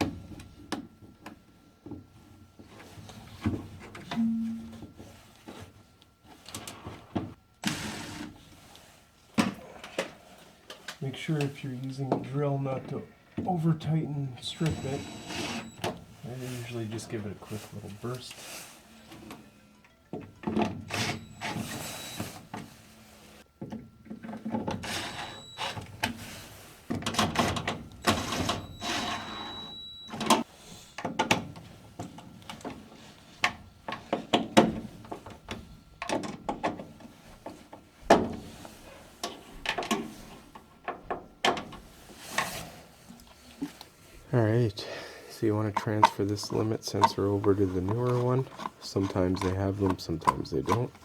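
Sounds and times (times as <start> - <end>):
power drill driving screws: 14.7 - 15.7.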